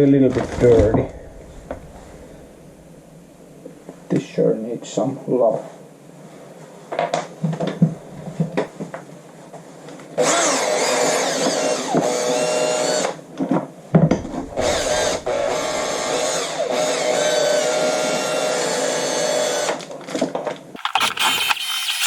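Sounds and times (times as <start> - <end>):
electric drill spinning brush: 20.8 - 22.0.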